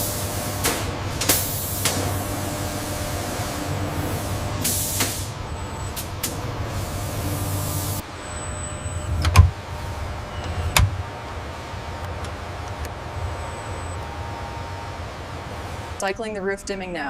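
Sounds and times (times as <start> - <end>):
factory machinery whirring: 0.0 - 16.6
hiss: 3.5 - 5.4.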